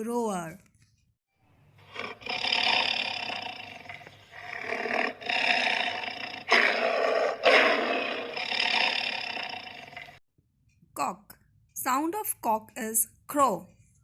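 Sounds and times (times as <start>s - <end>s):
lion roaring: 1.9s - 10.2s.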